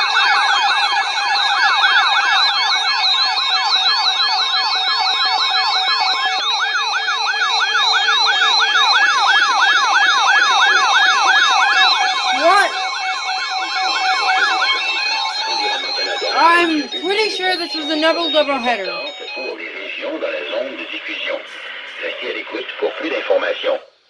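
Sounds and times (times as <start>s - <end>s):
steady high tones: 11.8s - 21.9s.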